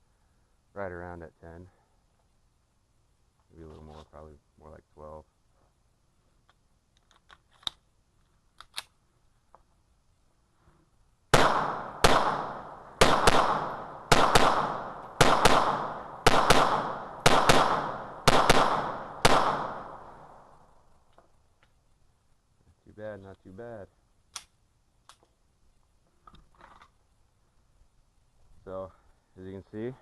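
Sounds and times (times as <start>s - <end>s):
pistol shots ringing out: 11.3s - 20.6s.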